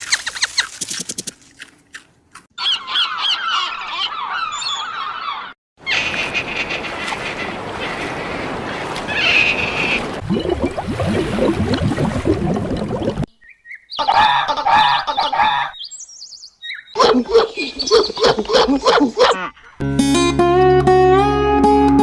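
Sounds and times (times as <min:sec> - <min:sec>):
geese honking: 0:14.0 - 0:15.7.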